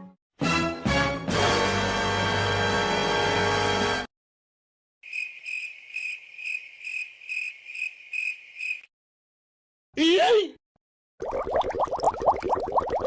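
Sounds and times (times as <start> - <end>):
crickets chirping: 5.0 - 8.9.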